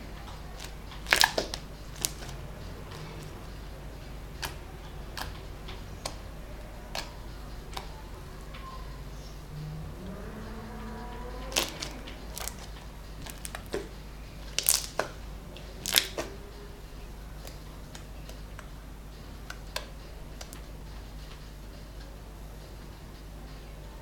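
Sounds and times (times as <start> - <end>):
slime popping and clicking: 0.6 - 3.4, 6.9 - 7.9, 11.4 - 13.9, 14.5 - 15.2, 15.8 - 16.4.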